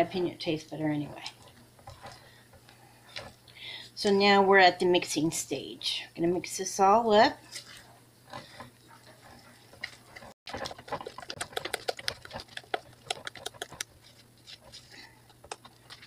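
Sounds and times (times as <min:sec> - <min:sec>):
wet batter squishing: 0:07.5 - 0:16.0.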